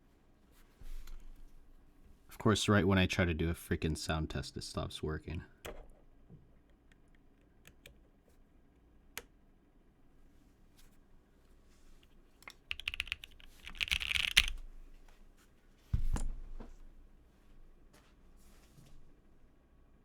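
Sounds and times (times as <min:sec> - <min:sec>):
keyboard typing: 0:12.4 - 0:14.6.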